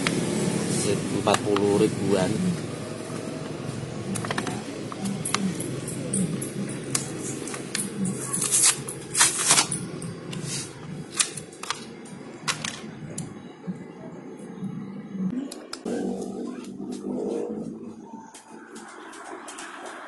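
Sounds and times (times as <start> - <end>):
steady background hum: 0.0 - 20.0
clutch parts clicking and clinking: 3.4 - 12.9.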